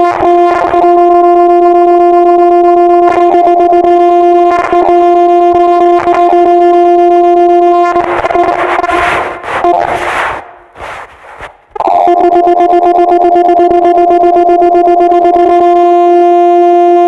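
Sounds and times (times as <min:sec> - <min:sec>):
loud horn-like tone: 0:00.0 - 0:10.6, 0:13.5 - 0:17.0
rushing noise: 0:08.0 - 0:11.7.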